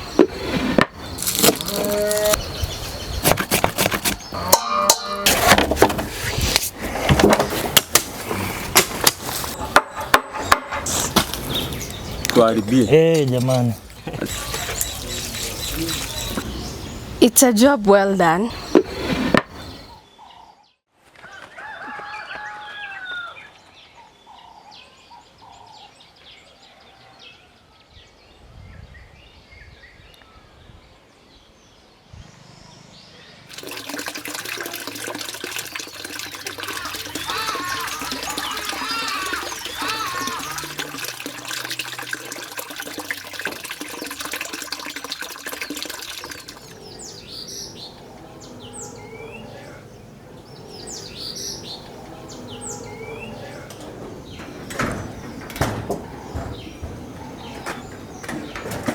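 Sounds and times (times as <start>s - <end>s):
birds chirping: 0.0s - 5.3s, 7.4s - 20.8s, 31.3s - 58.9s.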